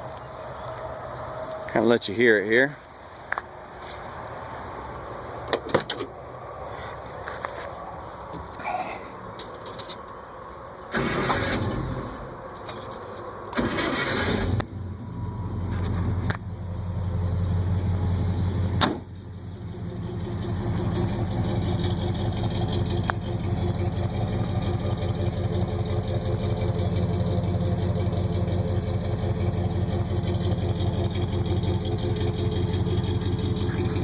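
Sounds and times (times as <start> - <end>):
truck engine idling: 11.0 - 34.0.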